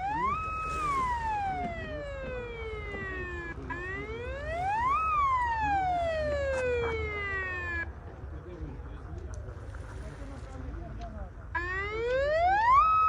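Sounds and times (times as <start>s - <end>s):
emergency vehicle siren wailing: 0.0s - 8.3s, 11.5s - 13.0s.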